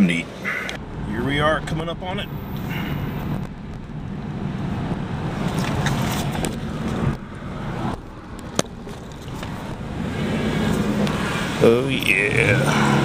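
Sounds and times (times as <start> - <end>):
car engine and road rumble: 0.0 - 13.0.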